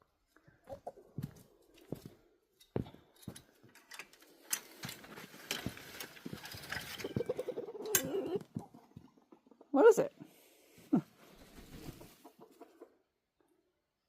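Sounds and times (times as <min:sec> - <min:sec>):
chicken trilling: 0:07.0 - 0:09.6.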